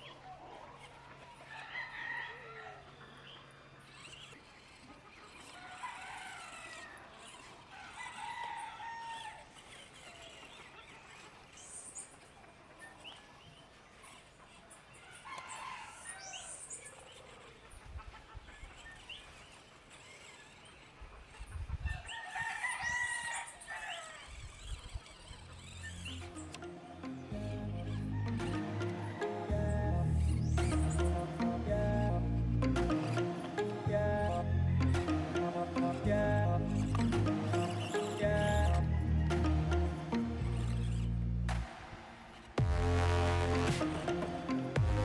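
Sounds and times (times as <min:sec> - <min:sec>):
rooster crowing: 0:01.4 - 0:03.0, 0:05.6 - 0:07.1, 0:22.1 - 0:24.3
chickens clucking: 0:17.0 - 0:19.9.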